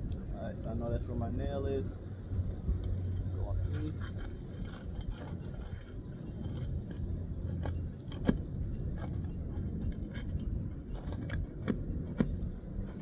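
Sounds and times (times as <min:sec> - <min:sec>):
steady low rumble: 0:00.0 - 0:13.0
pry bar clicking and scraping: 0:02.3 - 0:13.0.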